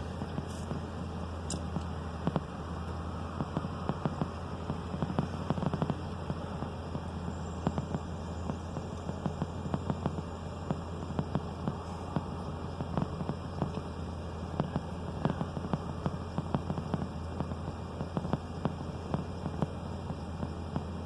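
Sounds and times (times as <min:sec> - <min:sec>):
steady low hum: 0:00.0 - 0:21.0
faint clicks and ticks: 0:01.5 - 0:14.0.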